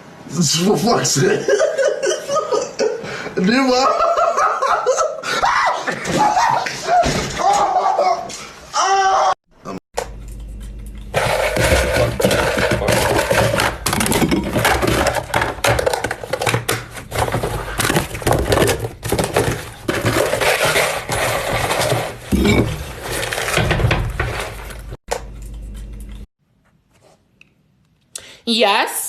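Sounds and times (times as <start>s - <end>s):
hard objects clattering and clinking: 10.1s - 25.0s.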